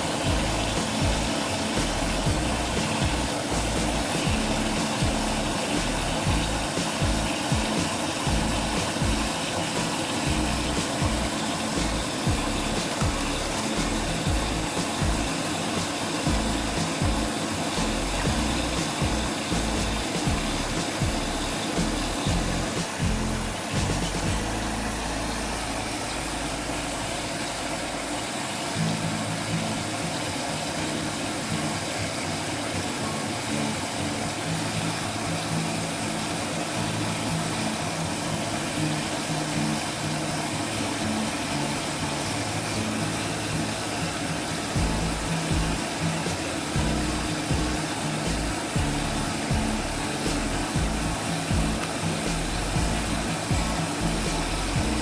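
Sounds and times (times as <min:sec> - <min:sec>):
music with plodding bass line: 0:00.0 - 0:26.9, 0:44.8 - 0:55.0
steady rushing noise: 0:00.0 - 0:28.7, 0:31.4 - 0:55.0.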